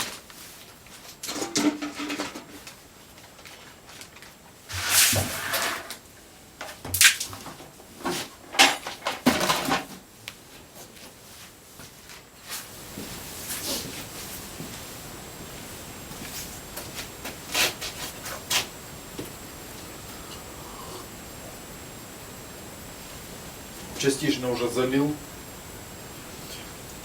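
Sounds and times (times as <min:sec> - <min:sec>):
scrapes and clatter on concrete: 0:00.0 - 0:06.0.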